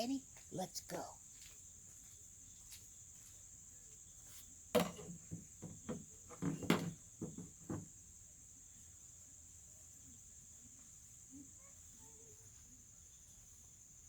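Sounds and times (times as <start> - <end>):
crickets chirping: 0.0 - 14.0
bucket contents dumped into wheelbarrow: 4.8 - 5.4, 6.4 - 7.0.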